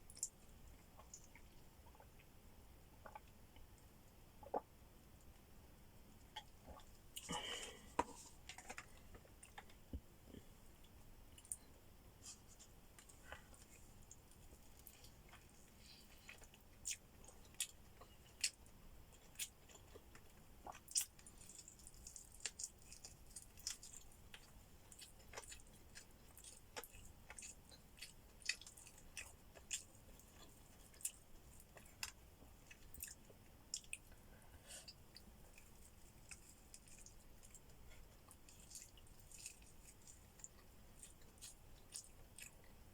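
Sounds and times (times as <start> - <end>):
crunches of chewing: 10.8 - 34.2, 34.8 - 42.9.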